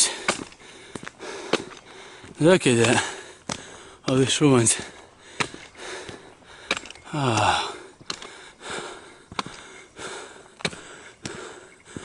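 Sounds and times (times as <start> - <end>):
person breathing hard: 0.0 - 4.0, 4.7 - 12.0
footsteps: 0.0 - 12.0
voiced sigh: 5.8 - 9.2.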